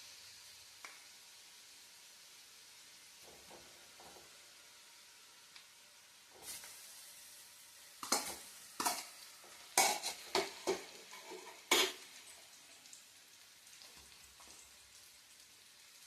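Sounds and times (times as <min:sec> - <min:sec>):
food sizzling in oil: 0:00.0 - 0:16.0
metal spoon scraping in a pan: 0:08.0 - 0:12.6.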